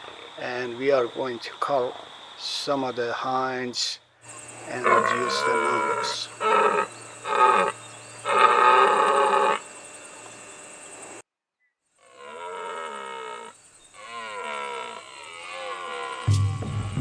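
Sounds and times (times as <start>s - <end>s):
deer roaring: 4.5s - 11.2s, 12.0s - 17.0s
music with deep throbbing beat: 16.3s - 17.0s.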